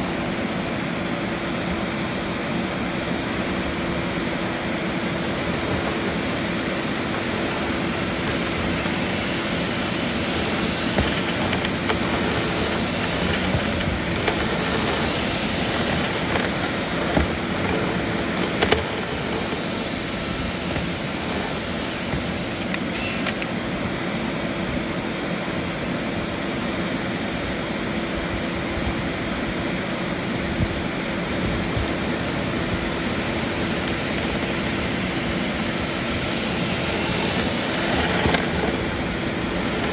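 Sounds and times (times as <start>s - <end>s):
cleaning equipment air rush: 2.9s - 23.2s, 31.0s - 39.9s.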